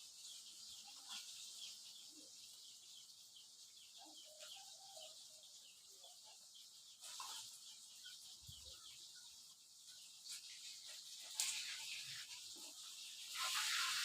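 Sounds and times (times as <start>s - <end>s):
fish sizzling in hot oil: 9.5s - 14.0s.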